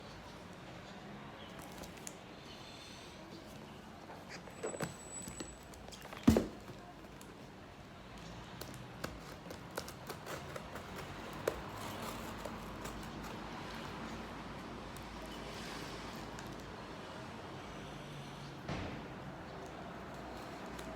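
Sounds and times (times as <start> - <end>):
packaging being handled: 8.5 - 14.2.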